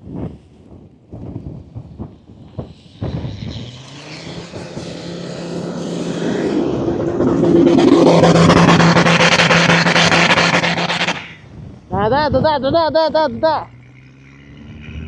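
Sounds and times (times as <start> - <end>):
engine working hard: 1.6 - 11.6, 13.1 - 15.0
fast clatter: 1.8 - 11.3.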